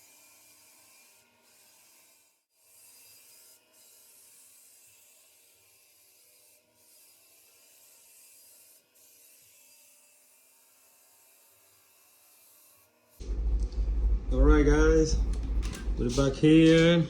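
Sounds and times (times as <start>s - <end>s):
floor sander hissing: 12.4s - 17.0s.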